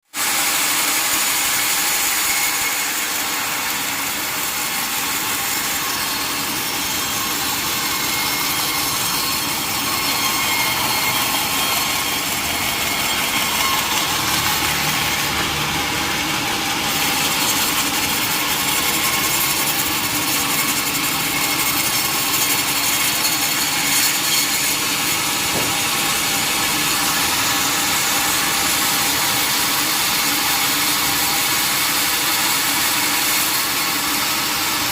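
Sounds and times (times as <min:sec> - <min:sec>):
sawmill blade cutting log: 0:00.1 - 0:34.9.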